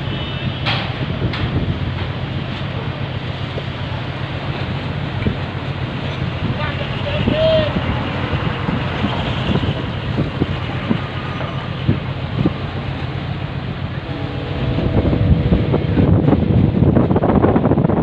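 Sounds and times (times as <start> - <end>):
ferry engines rumbling: 0.0 - 18.0
wind buffeting microphone: 0.0 - 18.0.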